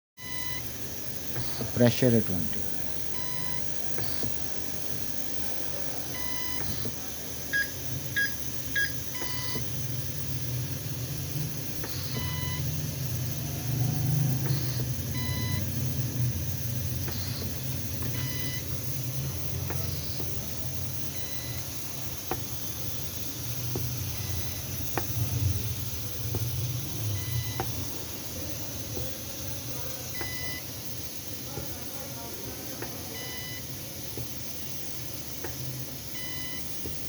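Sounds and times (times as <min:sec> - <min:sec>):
short electronic beeps: 0:00.2 - 0:05.3, 0:06.1 - 0:09.8, 0:11.7 - 0:12.8, 0:13.4 - 0:21.9, 0:24.1 - 0:25.6, 0:26.3 - 0:28.0, 0:30.2 - 0:30.7, 0:33.1 - 0:33.7, 0:36.1 - 0:36.9
steady low hum: 0:00.2 - 0:37.0
sharp clicks: 0:14.3 - 0:15.0.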